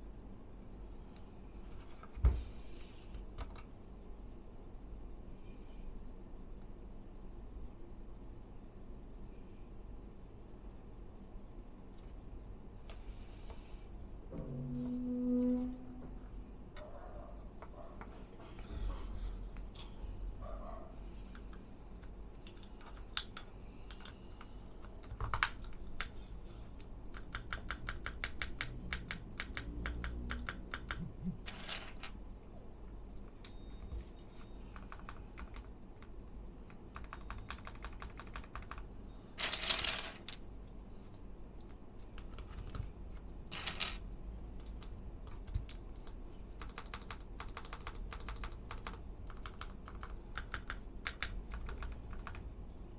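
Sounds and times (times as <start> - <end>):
mechanical keyboard typing: 24.8 - 26.2, 27.1 - 31.1, 34.7 - 35.7, 36.7 - 38.9, 44.6 - 52.5.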